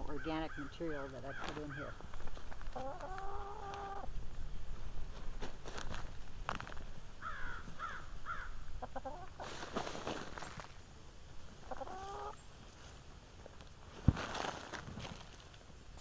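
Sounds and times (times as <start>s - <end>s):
rustling: 0.0s - 16.0s
chickens clucking softly: 1.3s - 4.2s, 7.4s - 10.8s, 11.5s - 12.5s.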